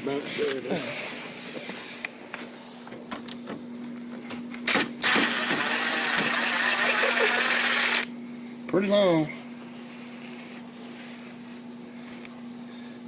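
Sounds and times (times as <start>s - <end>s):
power drill running: 5.0s - 8.1s.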